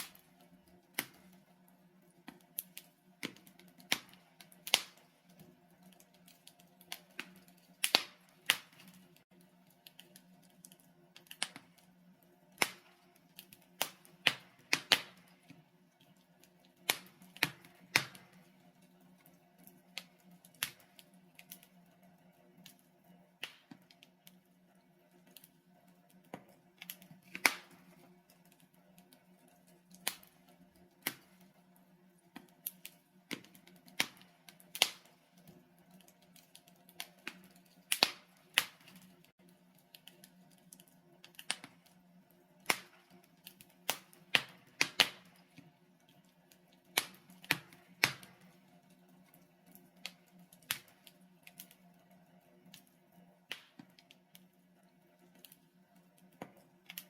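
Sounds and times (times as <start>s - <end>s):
logs crackling and popping: 0.0s - 57.0s.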